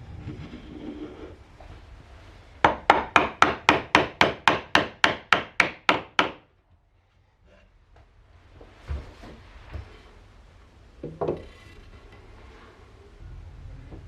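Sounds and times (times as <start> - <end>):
hammer striking wood: 2.6 - 6.5.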